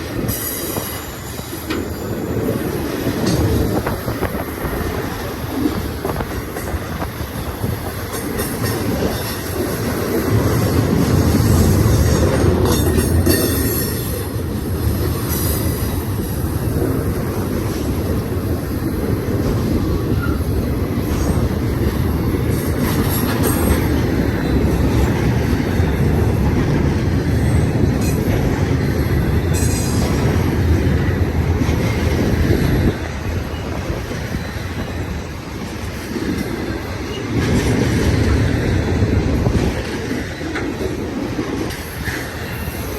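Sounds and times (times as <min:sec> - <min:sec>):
train wheels rumbling on rail: 0:00.0 - 0:42.9
train wheels squealing: 0:00.2 - 0:02.7, 0:11.4 - 0:16.6, 0:20.0 - 0:21.5, 0:27.2 - 0:35.8, 0:36.4 - 0:42.9.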